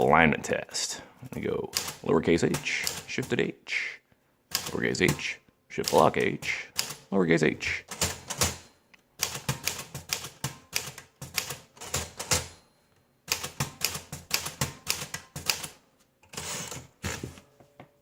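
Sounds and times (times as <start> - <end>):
typewriter rasping sound: 1.7 - 3.4, 5.8 - 7.1, 13.3 - 17.3
typewriter key strikes: 7.9 - 12.5.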